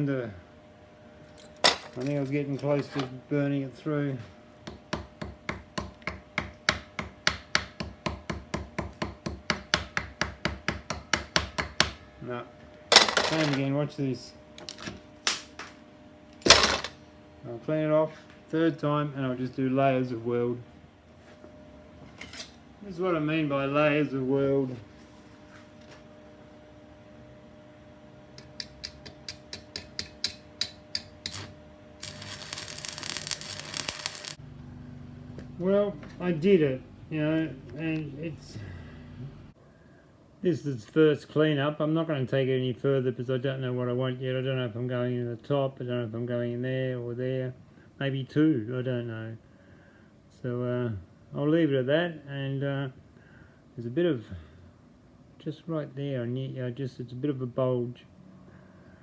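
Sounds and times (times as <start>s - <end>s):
small hammer tapping on metal: 4.6s - 12.0s, 28.4s - 31.4s
electric arc welding crackle: 31.2s - 34.4s.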